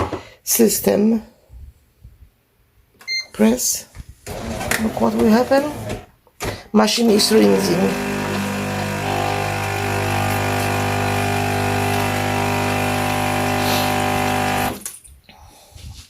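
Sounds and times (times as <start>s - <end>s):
coffee machine pump humming: 7.1s - 14.8s.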